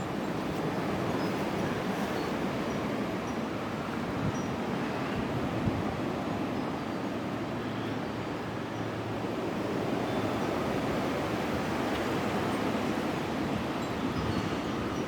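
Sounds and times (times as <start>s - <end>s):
strong wind on microphone: 10.0s - 15.0s.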